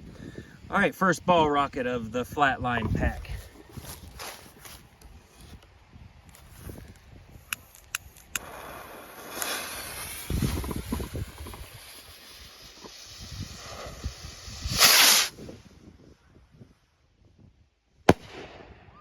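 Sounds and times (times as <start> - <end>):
wind rumble on microphone: 0.0 - 8.6, 9.8 - 17.8
firework fuse hissing: 6.4 - 15.7.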